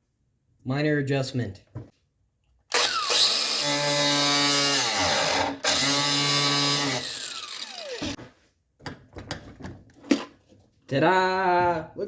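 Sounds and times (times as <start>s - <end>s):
power tool motor whining: 2.7s - 8.2s.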